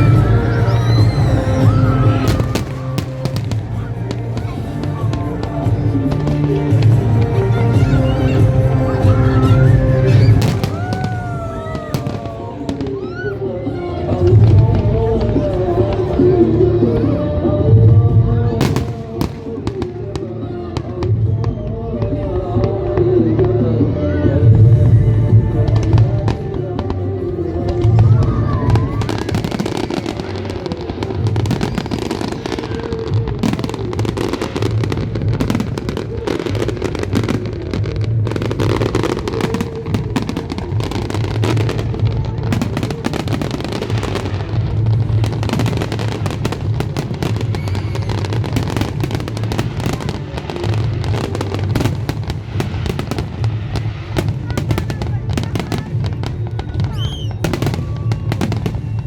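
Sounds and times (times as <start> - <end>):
fireworks bangs and crackles: 0.0 - 59.0.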